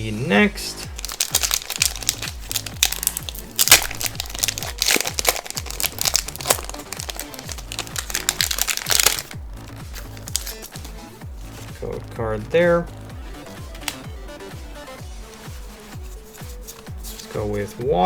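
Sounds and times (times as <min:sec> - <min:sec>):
background music: 0:00.0 - 0:18.0
foil wrapper crinkling: 0:00.9 - 0:09.4, 0:10.0 - 0:10.8.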